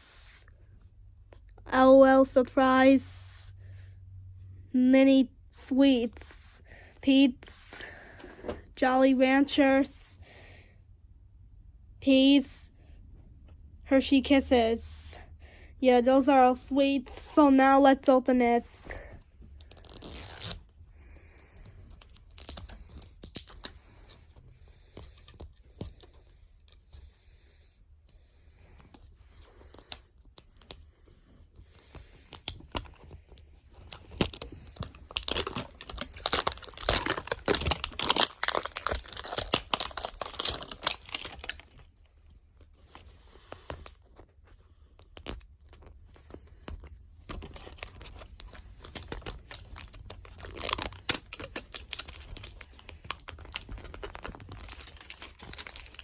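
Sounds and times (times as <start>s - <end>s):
packaging tearing and crinkling: 19.6s - 20.6s, 21.9s - 24.2s, 33.7s - 41.9s, 47.3s - 56.0s.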